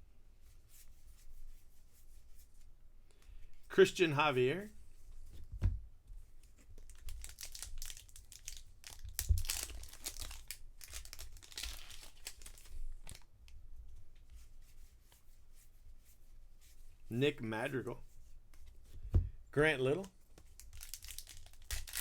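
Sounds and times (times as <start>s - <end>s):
wrapper tearing and crinkling: 6.8s - 13.3s, 20.5s - 22.0s
cards being handled: 19.9s - 22.0s.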